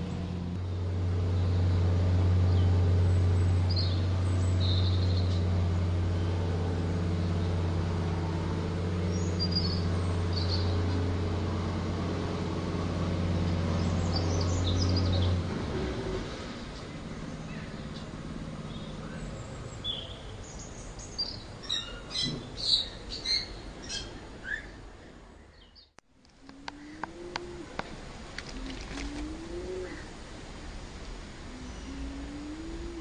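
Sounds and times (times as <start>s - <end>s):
loud steady low hum: 0.0s - 33.0s
small birds chirping: 1.4s - 5.5s, 9.0s - 11.0s, 13.7s - 15.4s, 16.8s - 26.0s.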